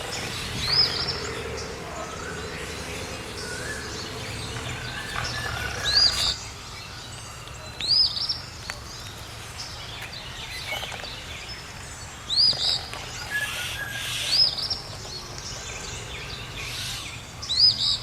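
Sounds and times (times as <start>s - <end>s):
birds whistling: 0.0s - 7.0s.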